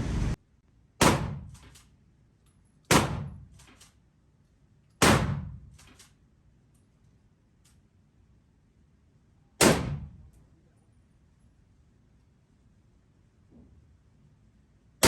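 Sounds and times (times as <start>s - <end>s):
rifle shots: 2.9s - 3.5s.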